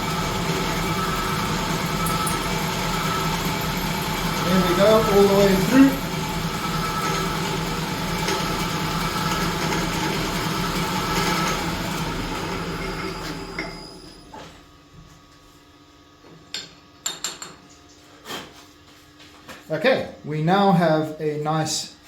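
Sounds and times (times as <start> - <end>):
milling spindle running: 0.0 - 14.6.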